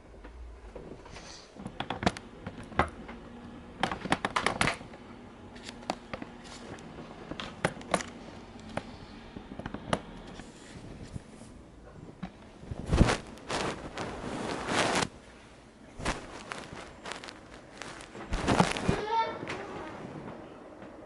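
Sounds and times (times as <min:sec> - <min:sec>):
sharp snaps and clicks: 0:01.6 - 0:05.0, 0:05.6 - 0:10.4.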